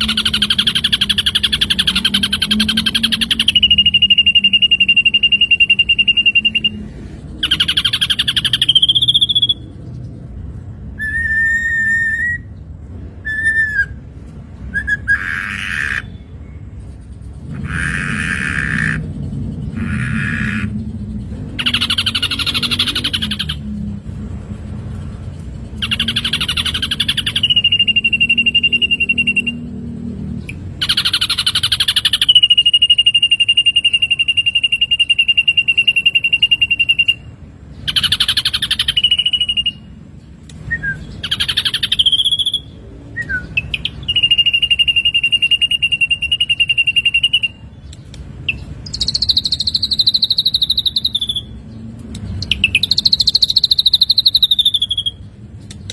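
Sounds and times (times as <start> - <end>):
long steady bird whistle: 0.0 - 9.7, 10.9 - 14.1, 25.8 - 29.8, 30.8 - 40.0, 40.6 - 51.6, 52.4 - 55.3
bird chattering phrases: 0.0 - 9.8, 14.8 - 16.4, 17.3 - 23.8, 25.7 - 29.6, 30.4 - 40.0, 41.0 - 51.6.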